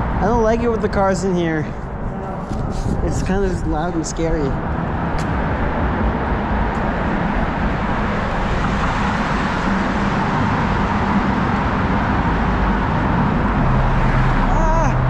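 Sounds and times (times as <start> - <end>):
cars driving past: 0.0 - 15.0.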